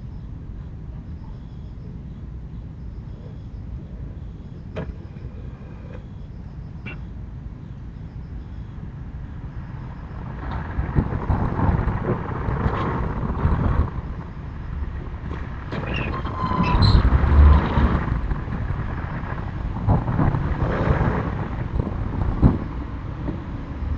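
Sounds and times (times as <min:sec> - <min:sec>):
car passing: 0:09.2 - 0:23.9.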